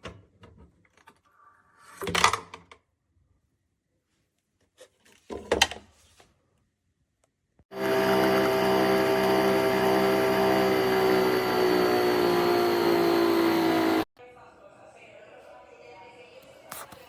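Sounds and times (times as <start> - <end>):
coffee machine motor whine: 7.7 - 14.1.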